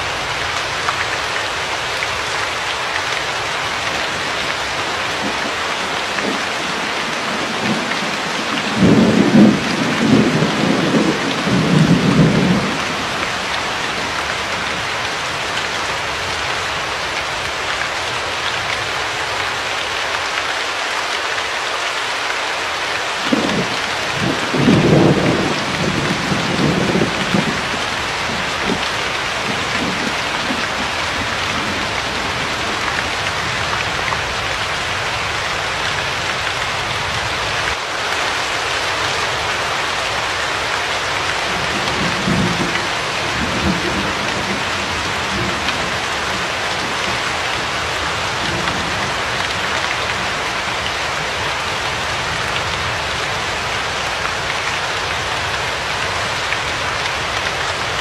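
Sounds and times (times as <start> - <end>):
rain hiss: 0.0 - 58.0
thunder rumbling: 5.2 - 14.8, 23.3 - 34.4, 41.3 - 53.2.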